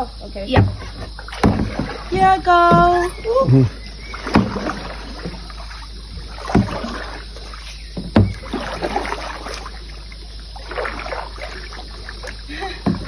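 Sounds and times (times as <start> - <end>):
sharp knocks: 0.5 - 1.9
paddle splashing through water: 0.5 - 13.0.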